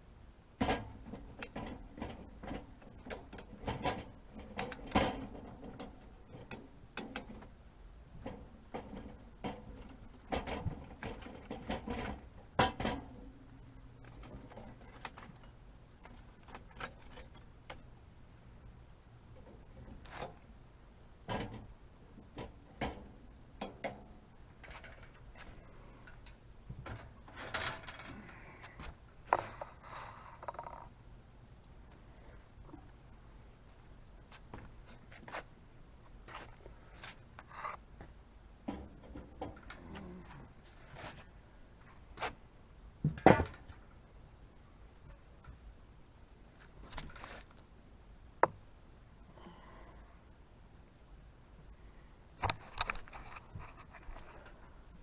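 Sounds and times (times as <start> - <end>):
high-pitched insect chorus: 0.0 - 55.0
knocks and clatter of handling: 0.6 - 7.6, 8.2 - 17.8, 21.2 - 29.8, 36.3 - 41.3, 43.0 - 43.8.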